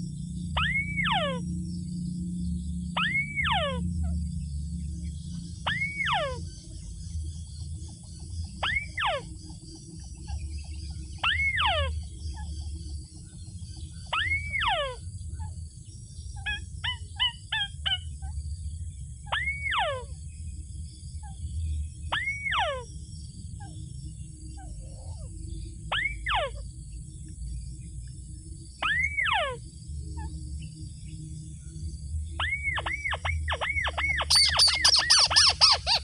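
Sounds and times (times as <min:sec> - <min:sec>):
steady low hum: 0:00.0 - 0:36.0
bird chattering notes: 0:32.4 - 0:36.0
waterhen calling: 0:32.4 - 0:36.0.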